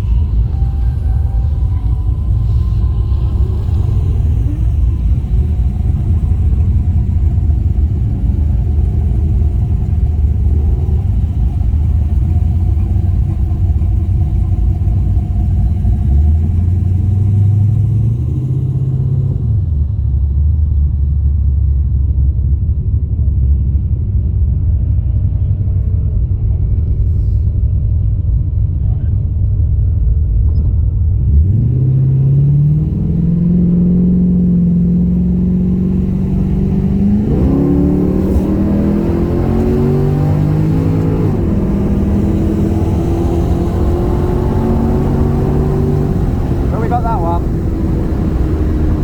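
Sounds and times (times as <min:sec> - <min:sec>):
car engine revving hard: 0:31.2 - 0:49.0.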